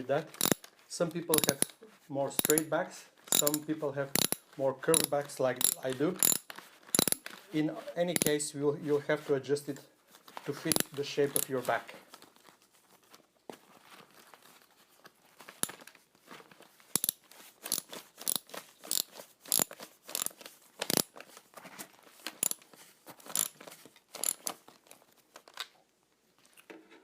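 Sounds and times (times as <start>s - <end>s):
backpack frame clicks and crunches: 0.3s - 1.8s, 3.3s - 7.5s, 15.4s - 16.0s, 16.6s - 25.8s.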